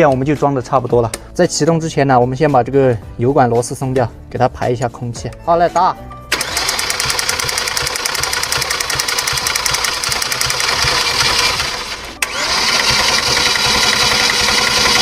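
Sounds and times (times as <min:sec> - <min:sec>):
diesel engine cranking: 0:06.3 - 0:15.0.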